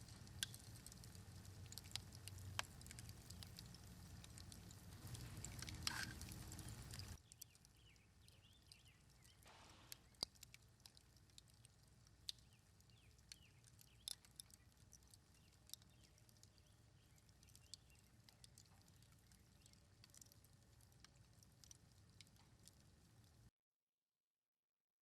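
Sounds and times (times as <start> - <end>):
small clicks and ticks: 0.0 - 23.5
faint bird chirps: 6.5 - 10.2, 15.3 - 18.2.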